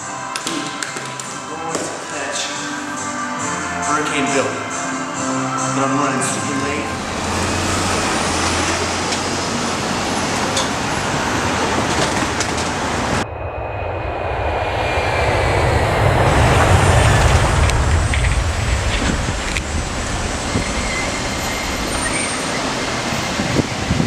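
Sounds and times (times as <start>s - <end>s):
vehicle road noise: 4.8s - 24.0s
deep rumble: 6.6s - 9.9s, 12.8s - 24.0s.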